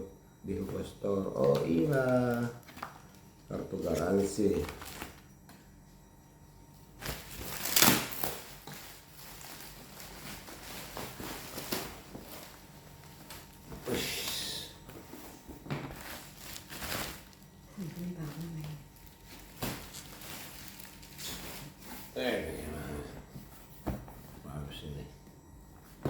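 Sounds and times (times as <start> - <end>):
paper and packaging rustling: 0.8 - 5.3, 7.0 - 22.8.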